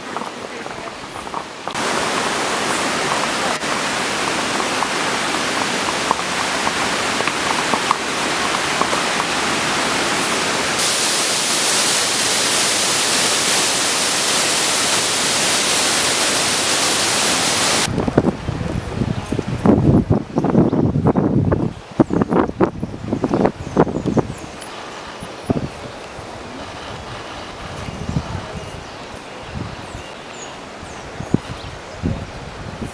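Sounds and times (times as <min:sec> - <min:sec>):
loud rushing noise: 0:08.7 - 0:18.0.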